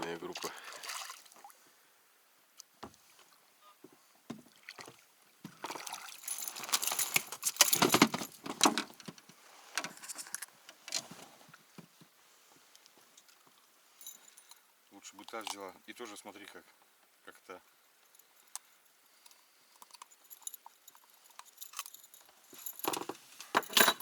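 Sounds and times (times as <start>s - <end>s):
water splashing around boat: 4.5s - 8.4s.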